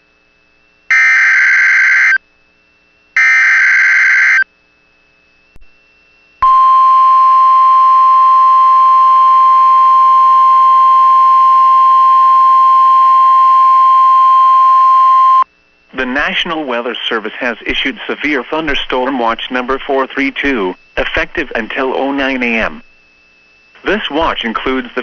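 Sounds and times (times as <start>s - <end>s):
steady warning alarm tone: 0.9s - 2.2s, 3.2s - 4.4s, 6.4s - 15.5s.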